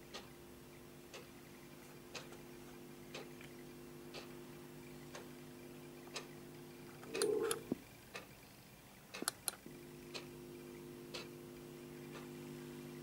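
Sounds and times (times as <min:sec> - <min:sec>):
low electrical hum: 0:00.0 - 0:13.0
steady ticking: 0:00.1 - 0:00.3, 0:01.1 - 0:01.3, 0:04.1 - 0:04.4, 0:06.1 - 0:08.3, 0:11.1 - 0:11.4.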